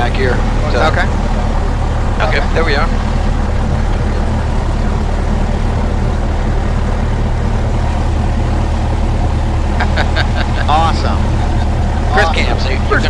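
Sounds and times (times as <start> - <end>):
airplane piston engine idling: 0.0 - 13.0.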